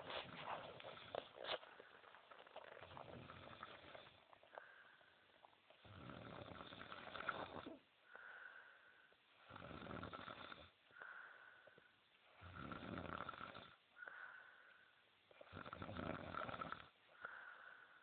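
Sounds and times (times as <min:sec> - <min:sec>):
rasping snores: 0:00.2 - 0:04.3, 0:05.8 - 0:07.8, 0:09.4 - 0:10.8, 0:12.4 - 0:13.8, 0:15.4 - 0:17.0.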